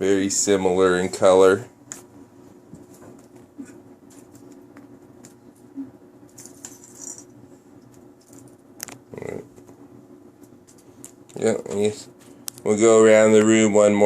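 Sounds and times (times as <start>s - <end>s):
cats playing with rattling toys: 6.3s - 7.3s.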